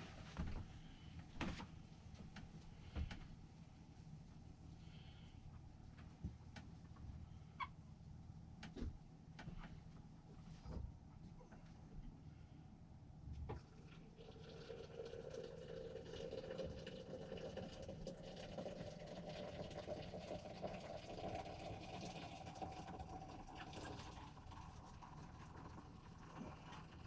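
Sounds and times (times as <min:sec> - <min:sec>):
water pouring into container: 0:13.6 - 0:27.0.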